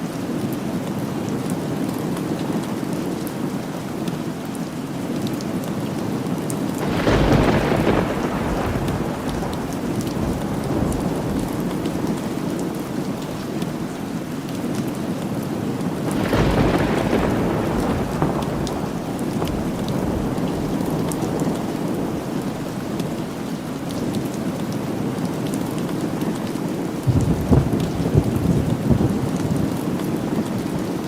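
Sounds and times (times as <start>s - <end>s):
steady rain falling: 0.0s - 31.0s
thunder rumbling: 6.8s - 14.1s, 16.1s - 24.2s, 25.8s - 31.0s.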